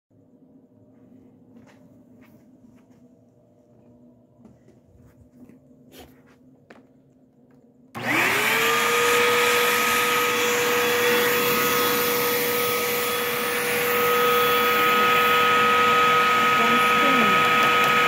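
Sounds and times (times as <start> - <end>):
vacuum cleaner motor whine: 7.9 - 18.0.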